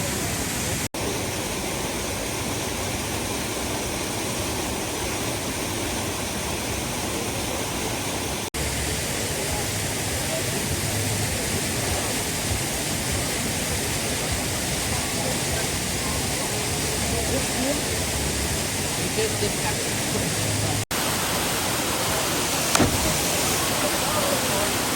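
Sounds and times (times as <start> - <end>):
waterfall rushing: 0.0 - 24.9.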